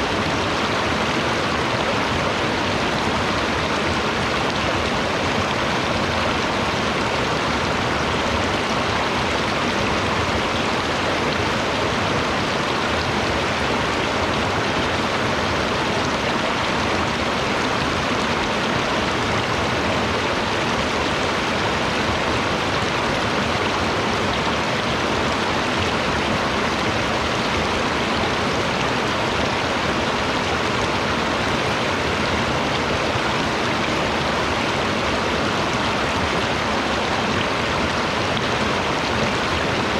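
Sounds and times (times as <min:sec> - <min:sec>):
stream water rushing: 0:00.0 - 0:39.9.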